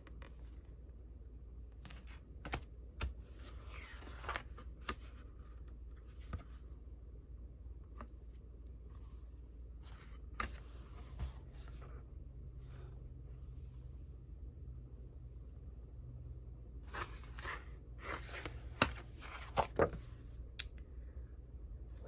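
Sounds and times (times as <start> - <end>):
paper rustling: 16.9 - 20.2.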